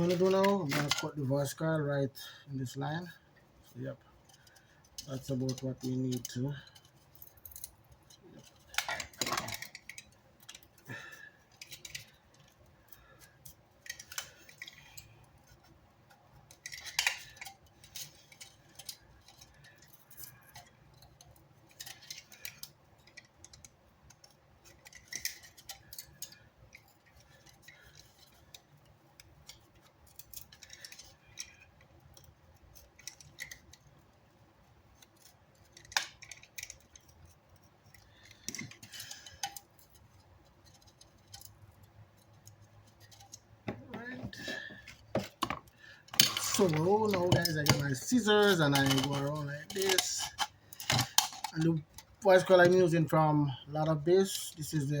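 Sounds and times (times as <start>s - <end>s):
handling noise: 42.2s - 53.0s.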